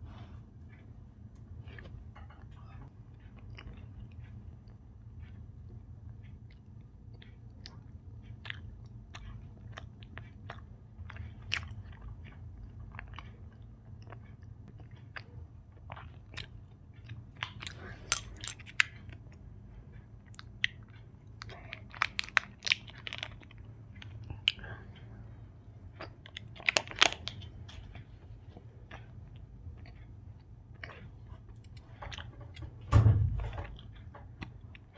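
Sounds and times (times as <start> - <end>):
steady low hum: 0.0 - 34.9
crunchy chewing clicks: 0.7 - 32.8, 33.6 - 34.9
wet chewing mouth clicks: 6.3 - 19.4, 20.2 - 25.1, 26.0 - 32.3.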